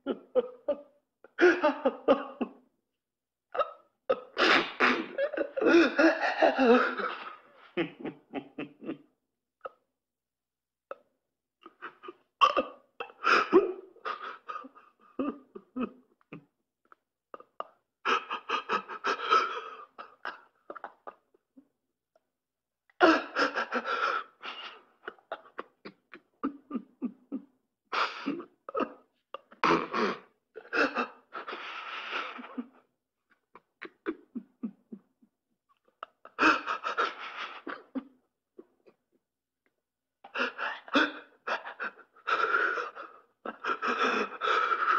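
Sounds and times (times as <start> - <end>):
recorded laughter: 0.0 - 2.7, 3.6 - 9.8, 11.6 - 21.7, 22.9 - 39.3.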